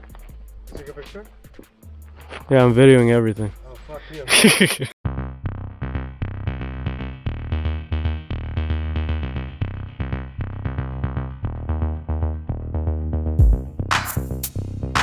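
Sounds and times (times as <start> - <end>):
drum-machine beat: 0.0 - 4.3, 13.4 - 15.0
deep kick drum: 13.4 - 15.0.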